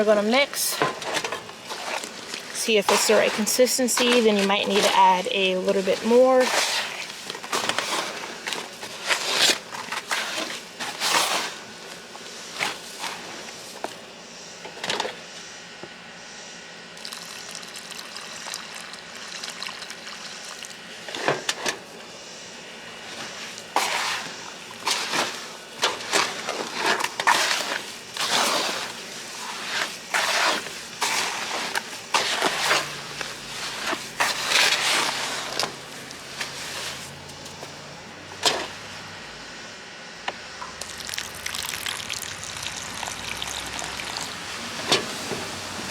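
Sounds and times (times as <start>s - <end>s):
wet mortar squelching: 1.6s - 11.5s, 23.8s - 37.8s, 40.7s - 44.5s.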